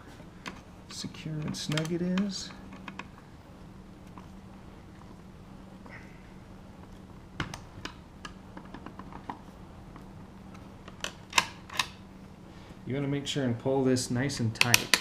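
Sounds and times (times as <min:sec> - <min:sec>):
faint low hum: 0:00.0 - 0:15.0
lock parts clicking: 0:00.4 - 0:03.1, 0:10.8 - 0:12.0, 0:14.5 - 0:15.0.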